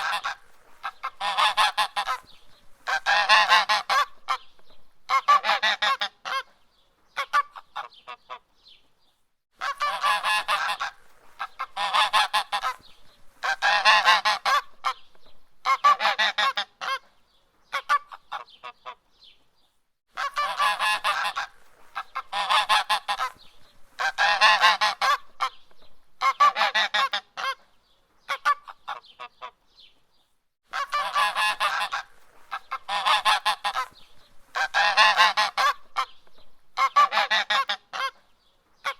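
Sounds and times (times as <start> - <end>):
goose honking: 0.0 - 2.2, 2.8 - 4.4, 9.6 - 12.8, 13.4 - 15.0, 20.2 - 23.4, 24.0 - 25.5, 30.7 - 36.1, 36.8 - 38.2.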